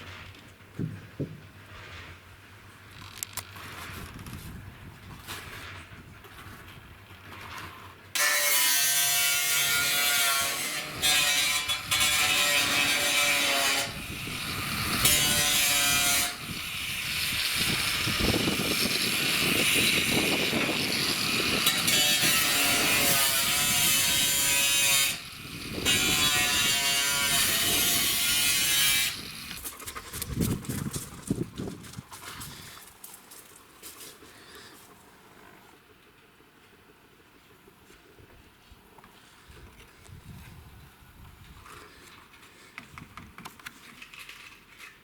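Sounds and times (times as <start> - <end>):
saw cutting: 8.2 - 30.8.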